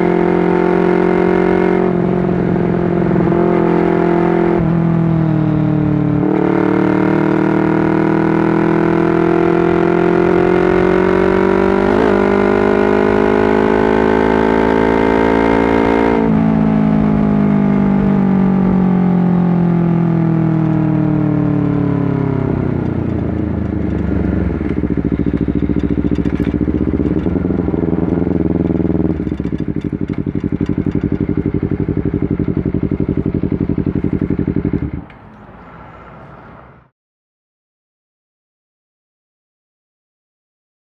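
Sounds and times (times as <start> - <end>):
motorcycle engine revving and idling: 0.0 - 35.5.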